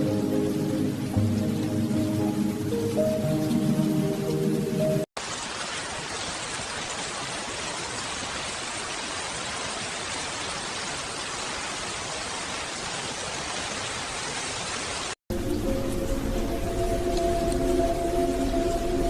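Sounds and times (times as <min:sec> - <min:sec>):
heavy rain hiss: 0:00.0 - 0:19.0.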